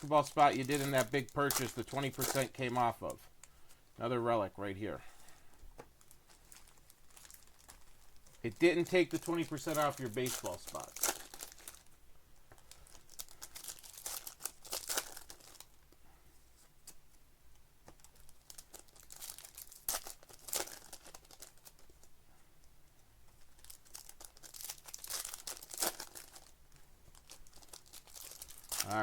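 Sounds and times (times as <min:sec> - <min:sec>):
card wrappers torn and crinkled: 0:00.0 - 0:03.2, 0:06.0 - 0:11.9, 0:12.6 - 0:15.9, 0:17.8 - 0:22.1, 0:23.4 - 0:29.0
cards being handled: 0:00.1 - 0:03.2, 0:08.4 - 0:11.7.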